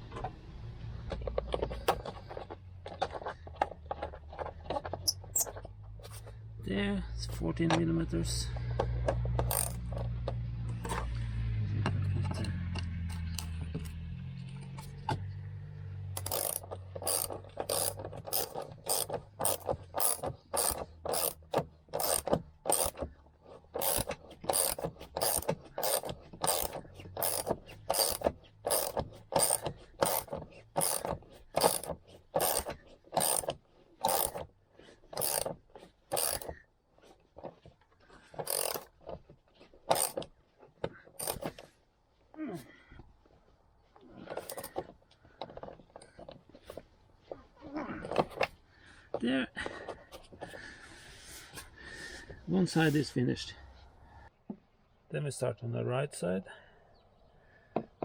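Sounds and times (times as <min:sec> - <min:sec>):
ratchet wrench clicking: 0:04.7 - 0:05.7, 0:08.5 - 0:11.1, 0:12.2 - 0:14.0, 0:16.1 - 0:34.5, 0:35.1 - 0:36.6, 0:38.4 - 0:38.9, 0:39.9 - 0:40.3, 0:41.2 - 0:41.6, 0:44.4 - 0:44.8.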